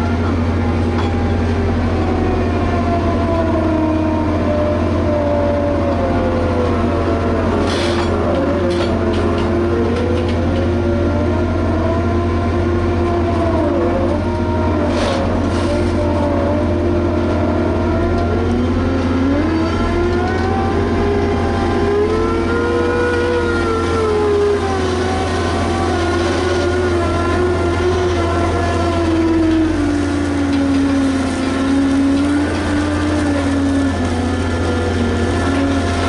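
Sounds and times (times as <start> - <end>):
diesel engine drone: 0.0 - 36.0
machine whining tones: 0.0 - 36.0.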